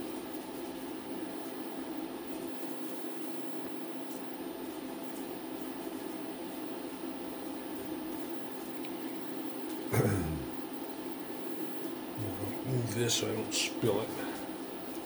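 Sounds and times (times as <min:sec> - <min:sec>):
machine hum: 0:05.9 - 0:15.0.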